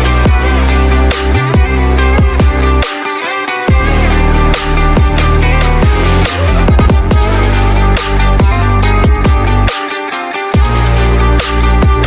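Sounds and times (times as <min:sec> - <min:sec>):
electronic music with heavy bass: 0:00.0 - 0:12.0
falling bass slides: 0:03.7 - 0:09.6.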